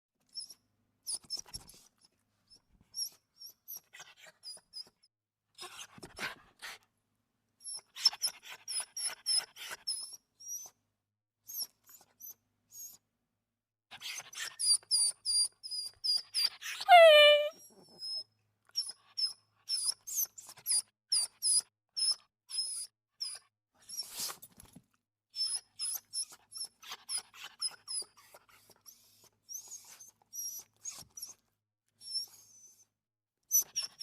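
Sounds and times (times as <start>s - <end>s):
dog whimpering: 16.9s - 17.5s.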